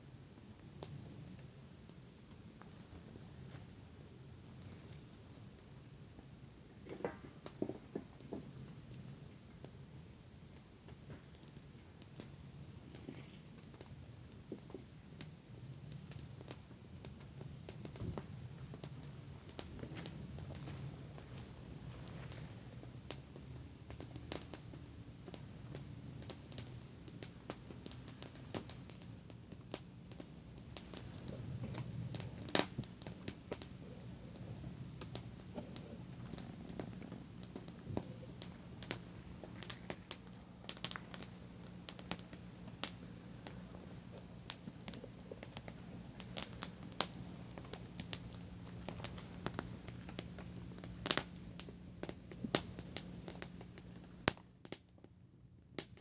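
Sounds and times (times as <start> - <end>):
campfire crackling: 0.0 - 56.0.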